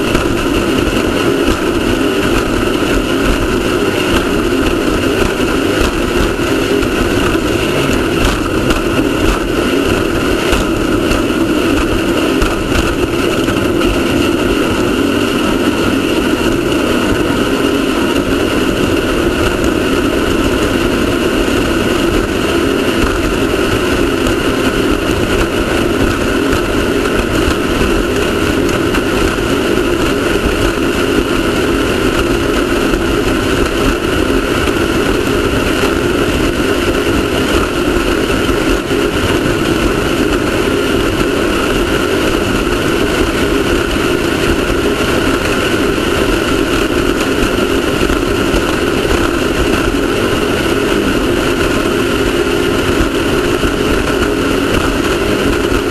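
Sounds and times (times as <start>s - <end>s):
loud rushing noise: 0.0s - 55.9s
race car engine running hard: 0.0s - 55.9s.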